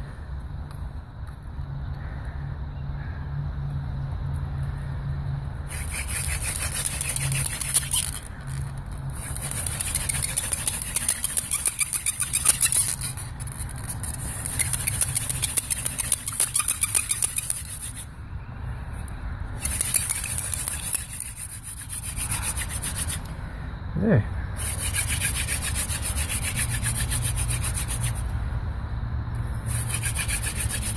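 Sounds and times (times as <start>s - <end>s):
wooden spindle rubbing on board: 5.7s - 18.0s, 19.6s - 23.3s, 24.6s - 28.2s, 29.7s - 30.9s.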